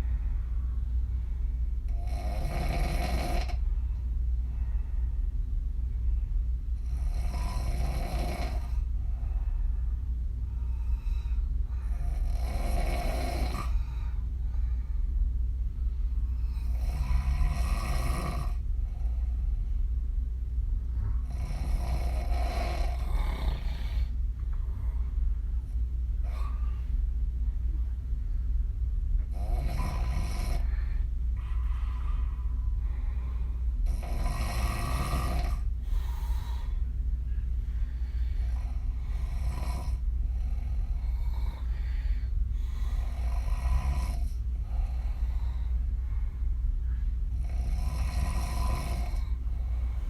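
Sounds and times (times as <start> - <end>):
steady low hum: 0.0 - 50.0
woman snoring: 1.9 - 3.6, 6.8 - 8.9, 11.8 - 13.9, 16.4 - 18.6, 21.2 - 24.1, 29.3 - 30.8, 33.8 - 36.8, 38.4 - 42.0, 42.6 - 45.7, 47.4 - 49.9.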